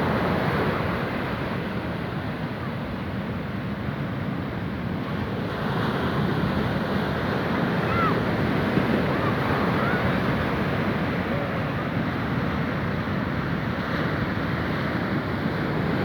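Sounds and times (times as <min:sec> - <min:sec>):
sea waves washing in: 0:03.3 - 0:16.0.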